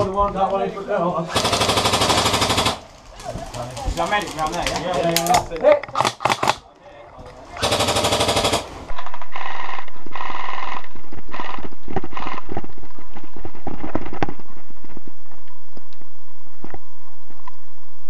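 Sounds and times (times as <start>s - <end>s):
airsoft guns firing bursts: 1.3s - 2.9s, 7.6s - 8.8s.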